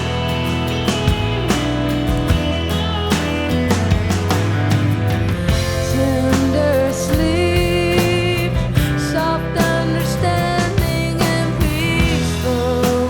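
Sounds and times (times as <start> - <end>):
band music with steady beat: 0.0 - 13.0.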